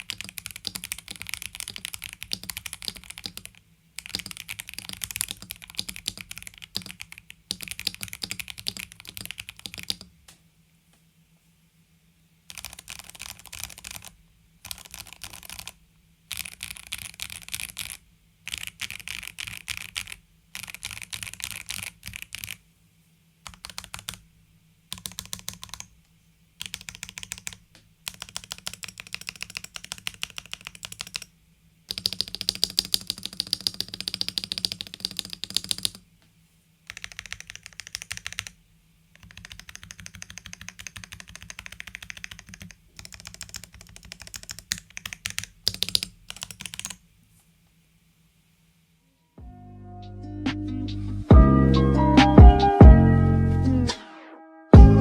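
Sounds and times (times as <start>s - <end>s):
mechanical keyboard typing: 0.0s - 10.1s, 12.5s - 22.6s, 23.4s - 24.2s, 24.9s - 25.9s, 26.6s - 31.3s, 31.9s - 36.0s, 36.9s - 38.6s, 39.2s - 47.0s.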